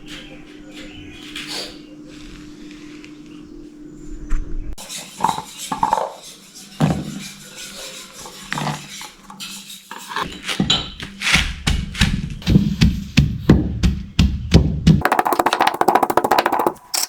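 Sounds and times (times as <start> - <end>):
utensils and dishes clinking: 4.8 - 11.1.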